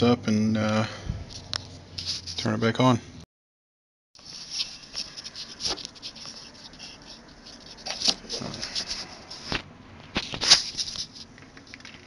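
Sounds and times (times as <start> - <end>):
objects rustling and clicking: 4.2 - 12.0.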